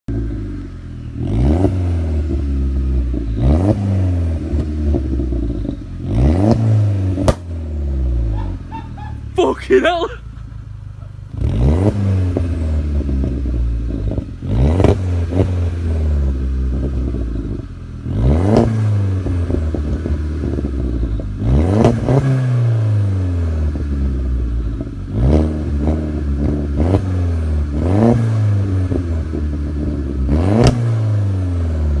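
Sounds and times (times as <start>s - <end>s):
car engine revving: 0.1s - 32.0s
exhaust crackles and pops: 4.4s - 7.6s, 10.3s - 22.5s.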